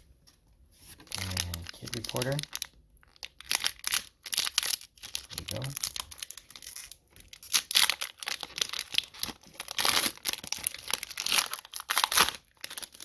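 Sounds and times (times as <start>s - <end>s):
plastic wrapper crinkling and tearing: 1.0s - 13.0s.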